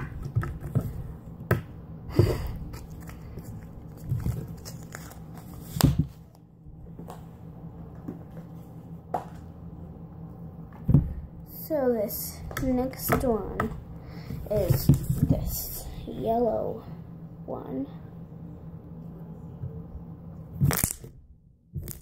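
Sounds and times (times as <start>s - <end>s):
slime squishing: 2.3s - 6.3s.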